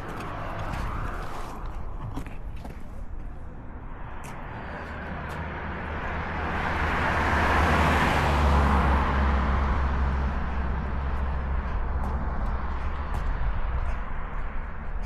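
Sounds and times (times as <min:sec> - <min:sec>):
low engine rumble: 0:00.0 - 0:15.0
vehicle passing by: 0:03.4 - 0:15.0.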